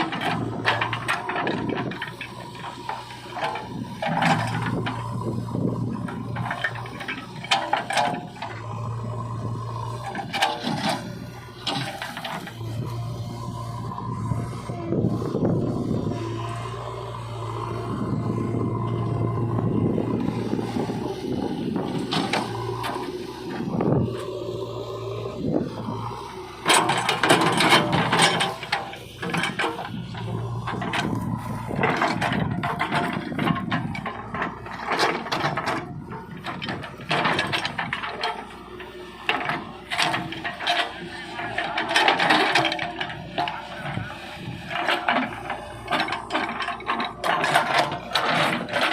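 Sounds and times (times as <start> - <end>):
backhoe bucket scraping earth: 0.0 - 48.9
diesel engine running: 0.0 - 48.9
bucket scraping and clanking: 26.6 - 38.4.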